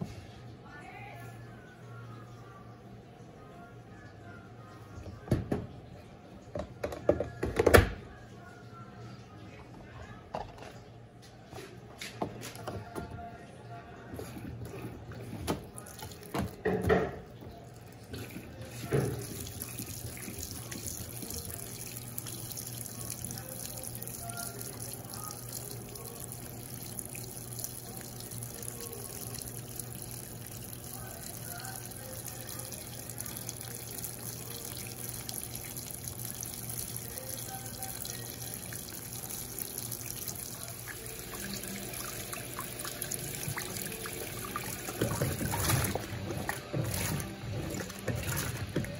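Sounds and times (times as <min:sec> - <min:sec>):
water running into washing machine: 0:14.0 - 0:48.9.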